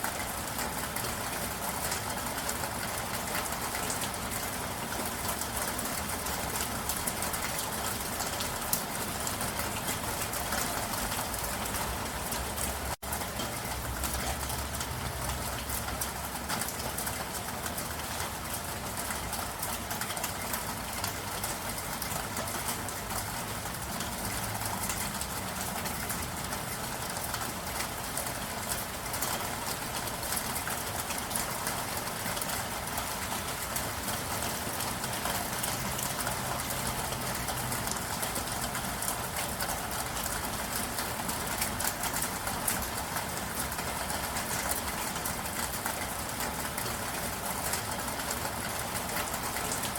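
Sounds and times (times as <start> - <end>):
steady rain falling: 0.0 - 49.9.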